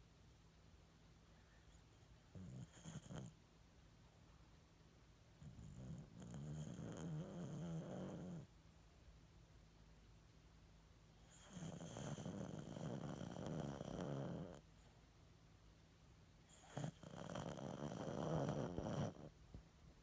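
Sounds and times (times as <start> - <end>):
dog snoring: 2.3 - 3.4, 5.4 - 8.5, 11.2 - 14.6, 16.5 - 19.4.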